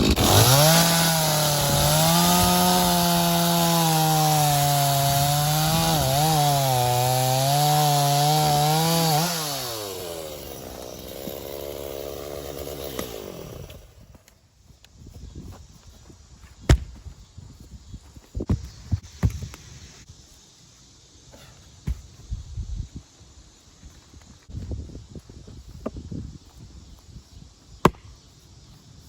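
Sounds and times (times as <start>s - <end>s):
chainsaw cutting wood: 0.0s - 14.2s.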